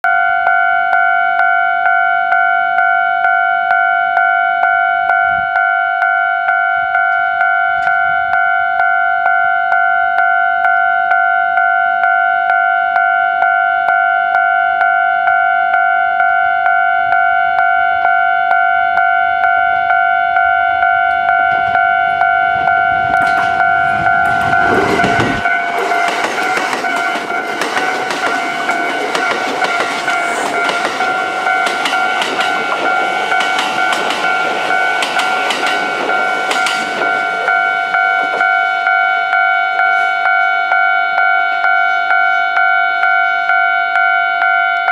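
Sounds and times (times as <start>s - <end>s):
level crossing bell ringing: 0.0s - 44.9s
electric train rushing past: 20.8s - 40.8s.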